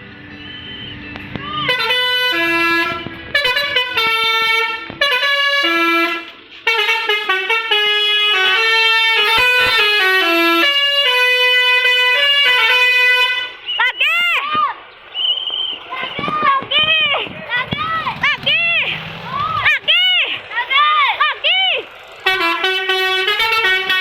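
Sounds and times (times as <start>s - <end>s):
bus air horn playing a tune: 1.6s - 13.7s, 22.1s - 24.0s.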